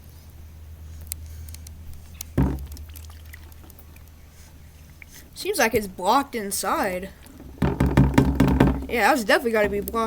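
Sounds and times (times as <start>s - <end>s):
steady low hum: 0.0s - 10.0s
thump: 2.4s - 2.7s, 7.6s - 8.9s.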